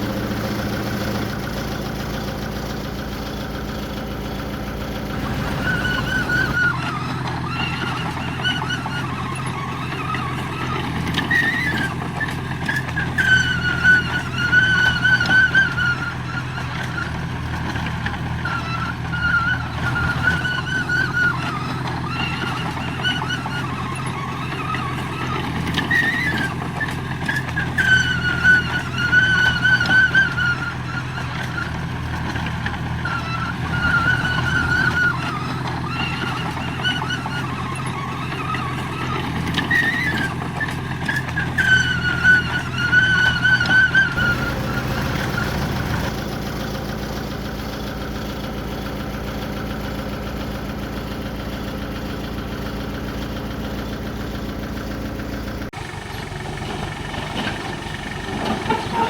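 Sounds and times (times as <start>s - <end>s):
high wavering squeal: 0.0s - 17.1s, 18.4s - 31.7s, 33.0s - 48.2s
diesel earthmoving machine running: 0.0s - 59.0s.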